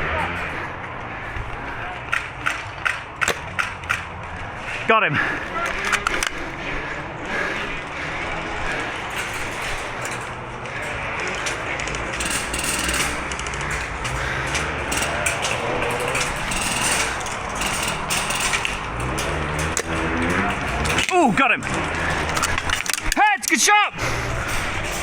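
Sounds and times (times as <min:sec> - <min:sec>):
sharp clicks of shots: 0:02.1 - 0:04.2, 0:11.2 - 0:23.6
airsoft rifle bursts: 0:11.0 - 0:19.0.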